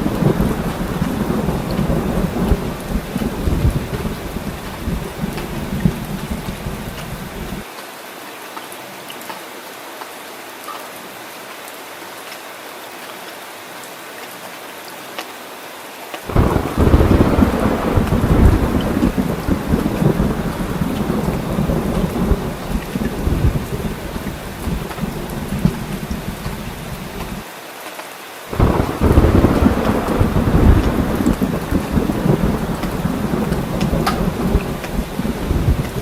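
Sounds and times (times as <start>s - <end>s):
thunder clap and rumble: 0.0s - 7.6s, 16.3s - 27.4s, 28.5s - 36.0s
steady rain hissing: 0.0s - 36.0s.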